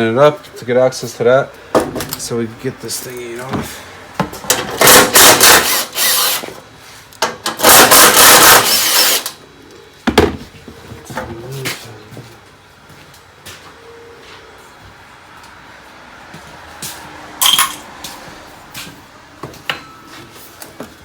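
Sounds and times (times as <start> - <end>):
hand ratchet rasping: 4.8 - 6.4.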